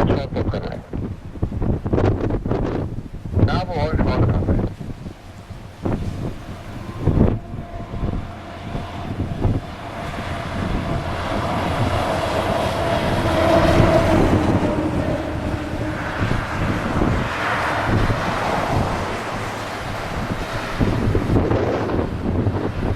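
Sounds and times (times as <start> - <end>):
wind thumping on microphone: 0.0 - 22.9
jet engines whining: 5.2 - 22.4.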